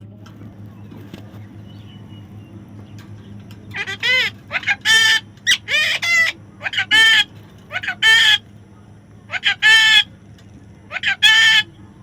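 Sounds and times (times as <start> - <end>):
low steady hum: 0.0 - 12.0
parrot squawking: 3.7 - 8.4, 9.3 - 10.1, 10.9 - 11.7.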